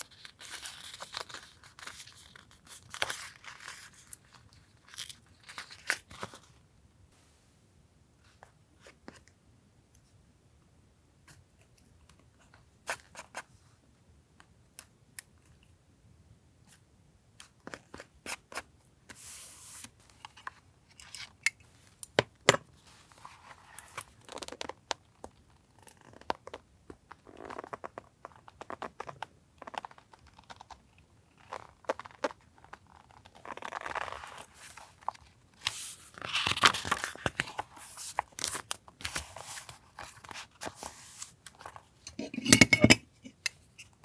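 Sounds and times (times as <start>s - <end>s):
paper rustling and crinkling: 0.0s - 6.6s, 31.4s - 42.0s.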